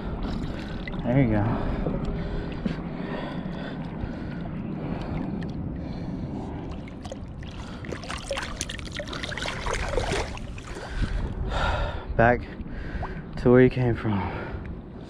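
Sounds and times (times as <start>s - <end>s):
water sloshing and splashing: 0.0s - 11.4s
wind on microphone: 0.0s - 15.0s.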